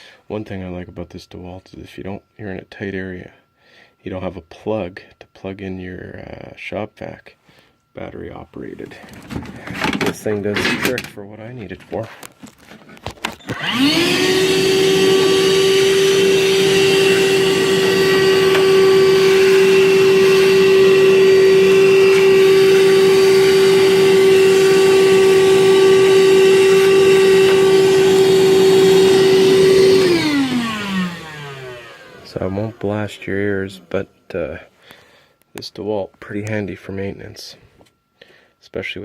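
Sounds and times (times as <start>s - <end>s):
shop vacuum whining: 7.5s - 35.5s.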